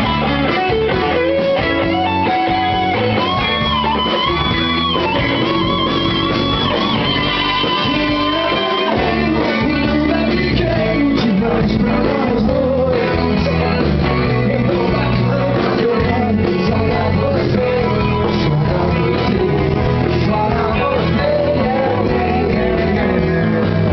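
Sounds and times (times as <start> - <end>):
electric guitar: 0.0 - 23.9
live rock band: 0.0 - 23.9
lead vocal singing: 7.2 - 23.9.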